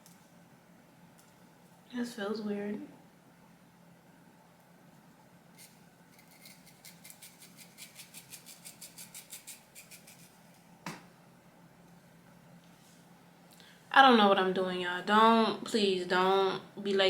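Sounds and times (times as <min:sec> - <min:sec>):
shears snipping hair: 0:05.6 - 0:10.4.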